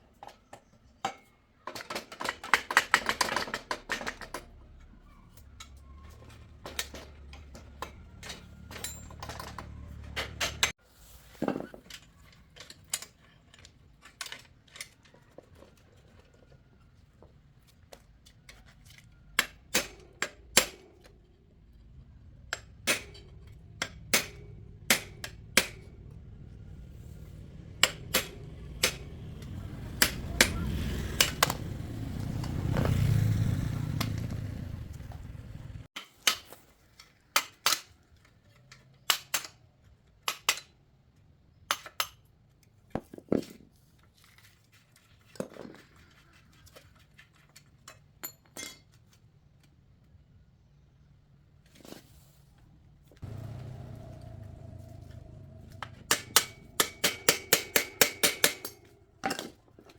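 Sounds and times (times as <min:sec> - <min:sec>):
metal tools clinking: 0:00.2 - 0:10.7.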